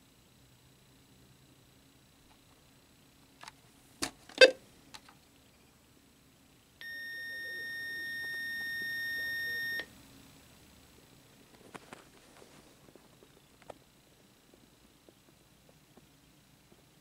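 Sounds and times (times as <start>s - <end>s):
high electronic alert beep: 6.8s - 9.8s.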